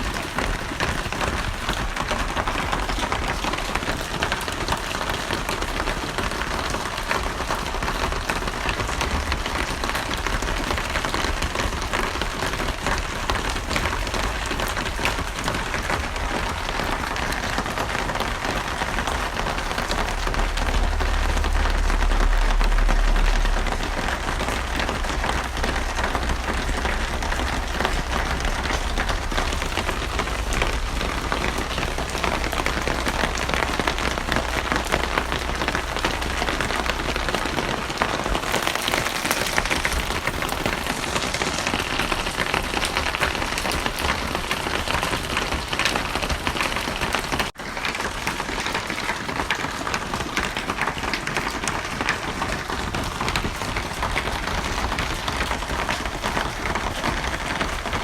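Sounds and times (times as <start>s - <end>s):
steady rain falling: 0.0s - 58.0s
low rumble: 7.4s - 44.2s.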